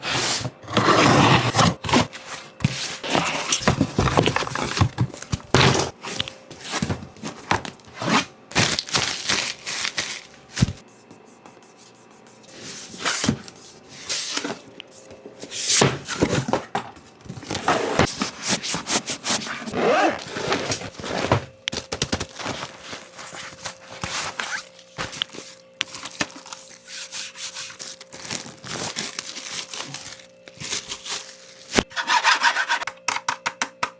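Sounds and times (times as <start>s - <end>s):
packaging rubbing and scraping: 0.0s - 10.8s, 17.3s - 32.9s
packaging thunks: 0.6s - 10.8s, 15.8s - 26.8s, 27.8s - 31.9s.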